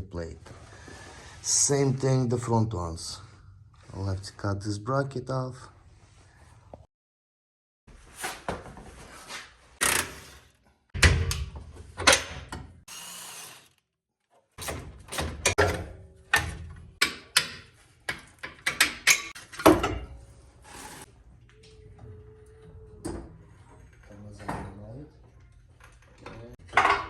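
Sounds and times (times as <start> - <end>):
power tool bursts: 12.9 - 13.8
metal clanks and knocks: 14.6 - 20.2, 25.9 - 27.0.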